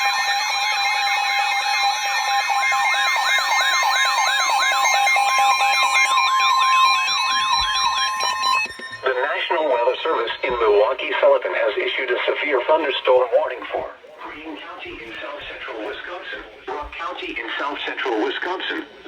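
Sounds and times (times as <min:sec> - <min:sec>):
warbling siren: 0:00.0 - 0:14.1
high steady alarm tone: 0:00.0 - 0:19.0.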